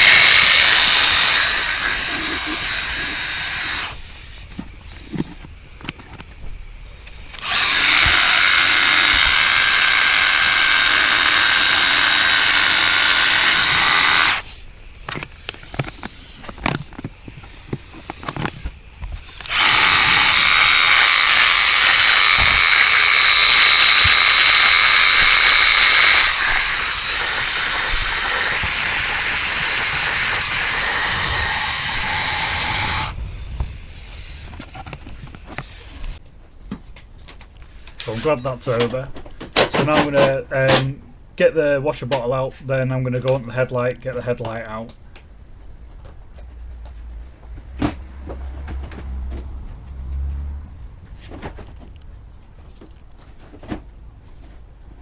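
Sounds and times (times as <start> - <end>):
electric motor and pump running: 0.0 - 36.2.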